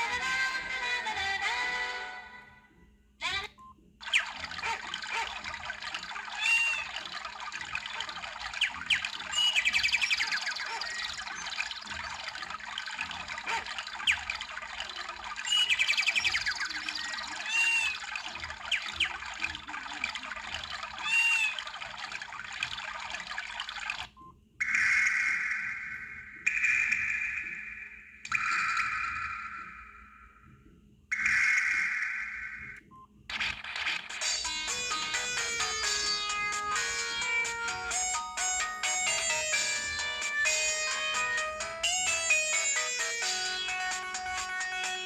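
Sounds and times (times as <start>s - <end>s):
birdsong chirps and trills: 4.0s - 30.4s, 31.1s - 45.0s
running water: 4.2s - 24.1s.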